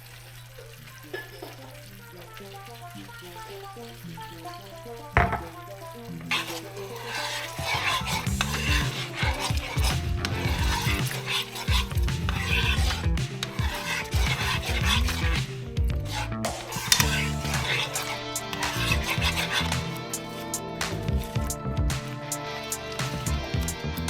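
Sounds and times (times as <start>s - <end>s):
food sizzling in a frying pan: 0.0s - 10.0s, 10.7s - 15.2s
soft background music: 1.0s - 24.0s
utensil scraping and knocking pan: 5.2s - 23.8s.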